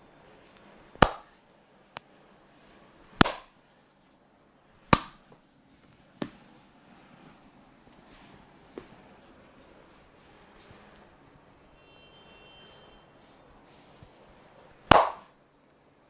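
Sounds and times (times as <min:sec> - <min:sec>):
hands smacking body: 0:01.0 - 0:01.4, 0:03.2 - 0:03.5, 0:04.9 - 0:05.4, 0:14.9 - 0:15.3.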